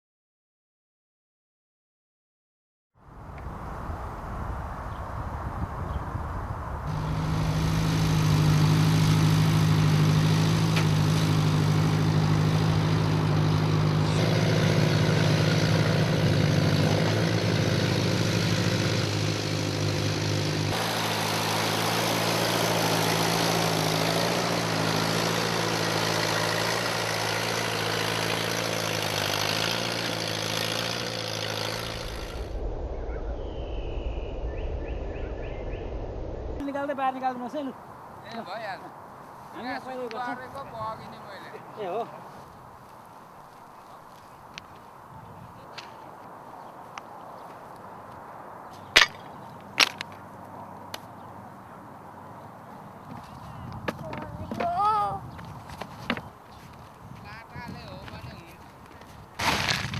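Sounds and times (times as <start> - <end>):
engine running steadily: 6.9 - 32.6.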